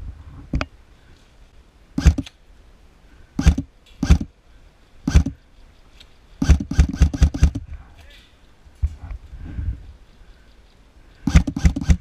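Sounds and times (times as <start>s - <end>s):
airsoft gun shots: 2.0s - 2.3s, 3.4s - 4.3s, 5.1s - 5.4s, 6.4s - 7.6s, 11.3s - 12.0s.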